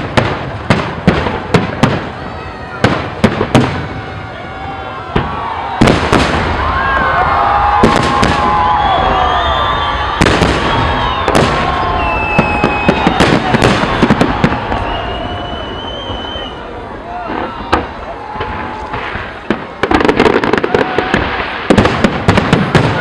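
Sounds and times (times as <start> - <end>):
crackling bangs: 0.0 - 2.2, 2.8 - 4.0, 5.1 - 16.4, 17.2 - 23.0
gliding whistling tones: 14.7 - 16.7.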